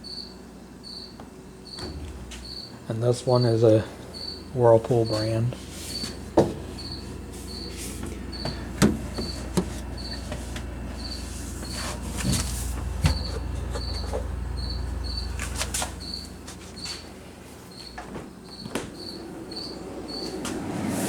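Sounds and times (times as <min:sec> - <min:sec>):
cricket chirping: 0:00.0 - 0:20.5
refrigerator doors knocking and clunking: 0:01.6 - 0:20.3
low hum: 0:01.7 - 0:17.6.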